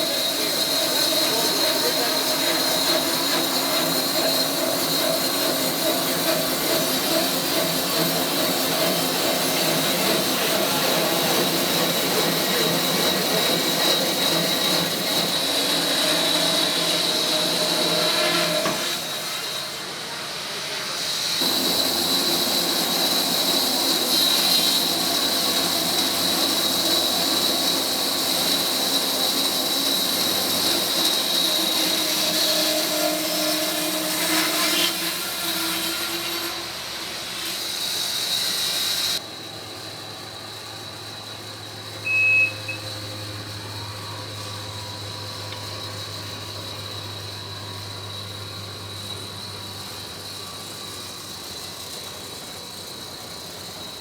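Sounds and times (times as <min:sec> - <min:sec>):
sawmill cutting log: 0:00.0 - 0:39.2
short high beep: 0:42.0 - 0:43.0.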